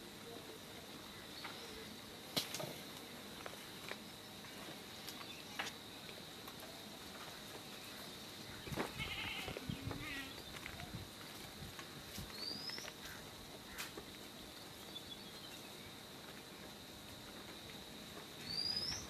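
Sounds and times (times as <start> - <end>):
faint high-pitched hum: 0.0 - 19.0
goats bleating: 9.0 - 10.3
bird chirp: 12.3 - 13.0, 18.4 - 19.0.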